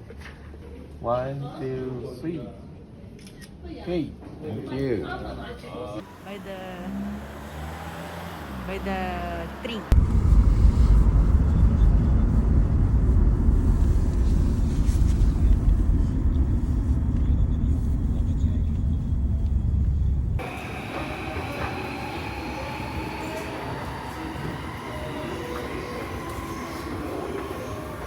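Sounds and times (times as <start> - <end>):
train low rumble: 6.0 - 28.0
electric motors whining: 20.4 - 28.0.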